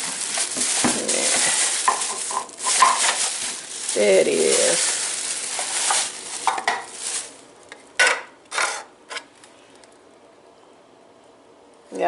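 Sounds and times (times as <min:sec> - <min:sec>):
dishes and utensils clattering: 0:05.6 - 0:07.0.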